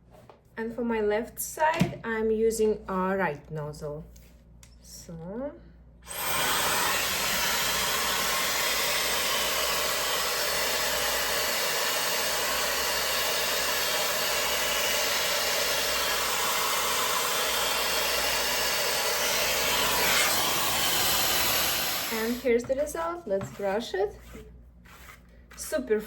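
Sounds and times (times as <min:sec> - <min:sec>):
hair dryer blowing air: 0:06.1 - 0:22.9.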